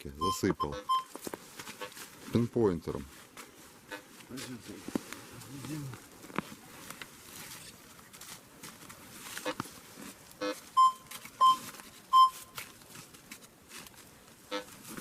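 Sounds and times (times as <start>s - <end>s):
metal detector short beeps: 0.1s - 1.2s, 10.4s - 12.6s.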